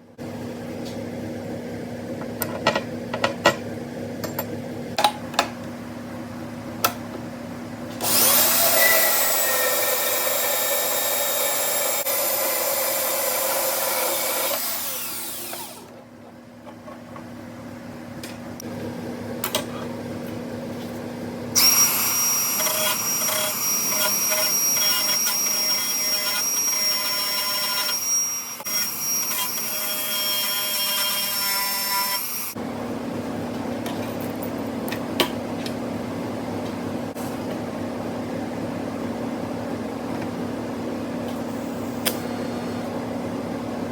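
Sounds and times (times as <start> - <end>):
power tool whining: 8.0 - 15.9, 21.6 - 32.6.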